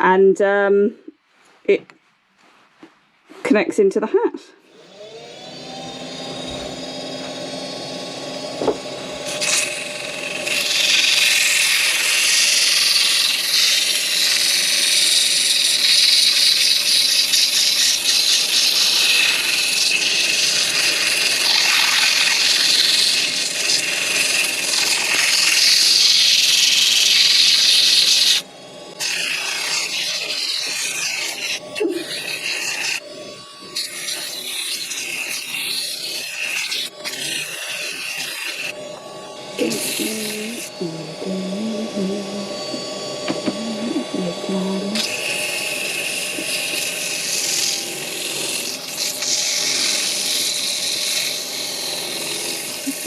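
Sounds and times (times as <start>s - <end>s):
wood lathe running: 4.6s - 53.0s
hiss of tool on spinning wood: 39.6s - 41.4s.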